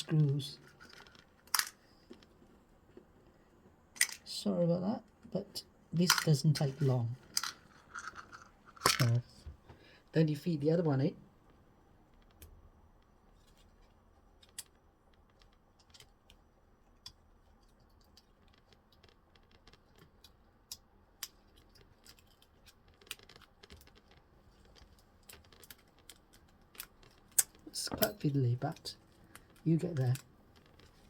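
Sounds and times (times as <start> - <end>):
faint small clicks and taps: 11.4 - 31.0.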